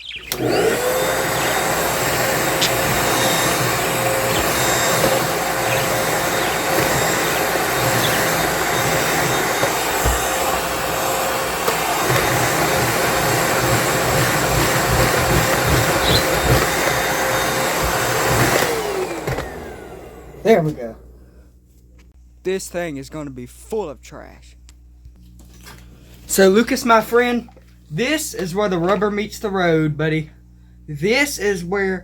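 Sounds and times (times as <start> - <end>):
vacuum cleaner running: 0.0 - 21.4
vacuum bumping on floor: 0.3 - 19.8.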